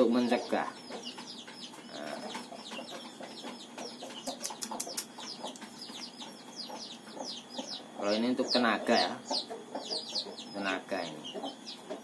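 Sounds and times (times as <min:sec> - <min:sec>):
birds chirping: 0:00.0 - 0:12.0
sharp clicks: 0:04.3 - 0:05.7.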